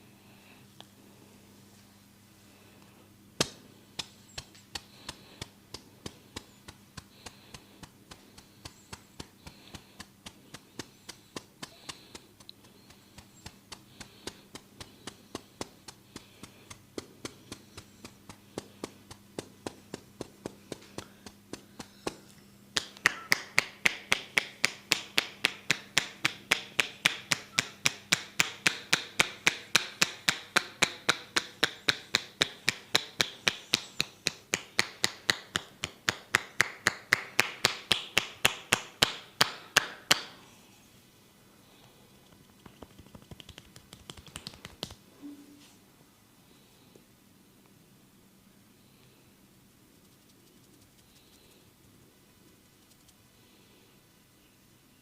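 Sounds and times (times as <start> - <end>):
fingers tapping a head: 3.4 - 40.4, 42.3 - 45.0.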